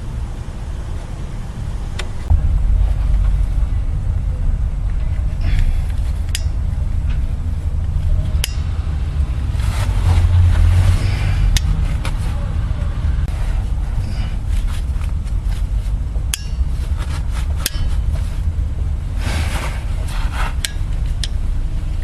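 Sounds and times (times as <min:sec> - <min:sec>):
steady low rumble: 0:00.0 - 0:22.0
hand tools clicking and scraping metal: 0:16.3 - 0:18.5, 0:19.3 - 0:21.4.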